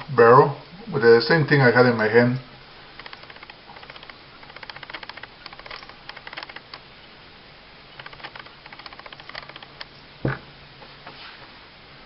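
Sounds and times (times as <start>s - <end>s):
light metal clicks and rattles: 3.0s - 6.8s, 8.0s - 10.0s.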